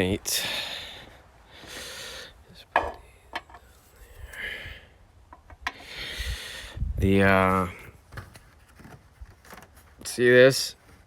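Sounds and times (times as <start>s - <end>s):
soft rubbing and rustling: 8.0s - 11.0s.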